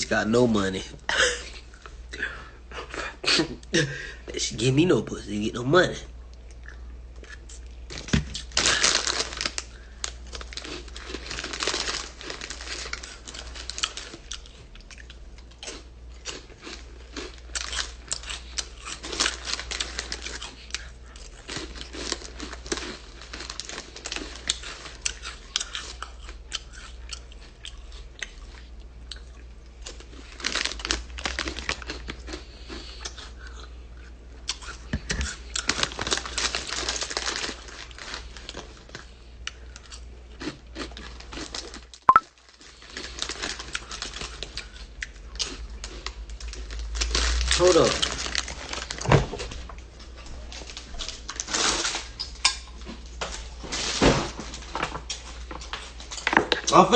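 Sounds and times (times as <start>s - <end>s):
plastic wrapper crinkling: 7.9s - 14.2s, 18.9s - 20.4s, 21.6s - 25.0s, 29.9s - 32.0s, 35.6s - 39.0s, 41.1s - 44.5s, 46.3s - 49.6s, 50.5s - 52.2s
chewing: 12.3s - 35.7s.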